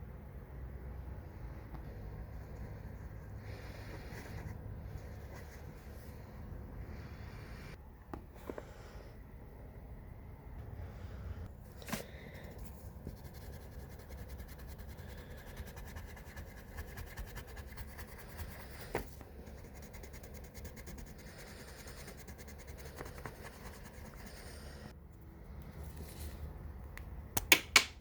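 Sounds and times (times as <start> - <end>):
drawing tool scratching on paper: 13.1 - 24.6.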